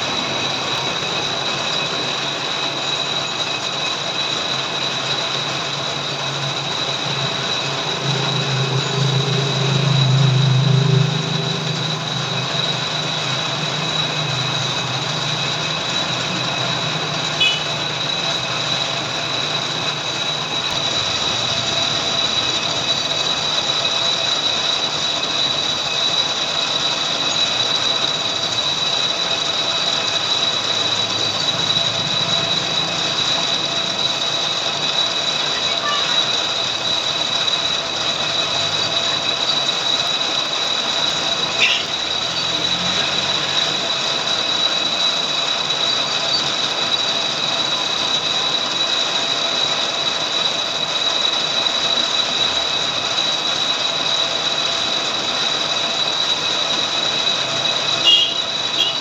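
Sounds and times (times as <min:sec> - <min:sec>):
lathe whining: 0:00.0 - 0:59.0
low rumble: 0:06.7 - 0:16.0.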